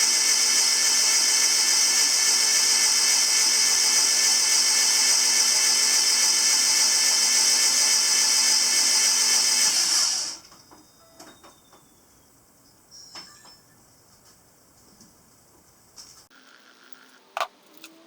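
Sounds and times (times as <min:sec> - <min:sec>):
power tool motor whining: 0:00.0 - 0:10.4.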